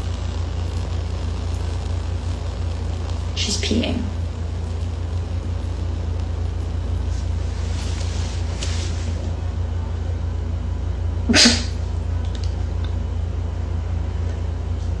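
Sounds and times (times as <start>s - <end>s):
low hum: 0.0s - 15.0s
cat sneezing: 11.3s - 11.9s.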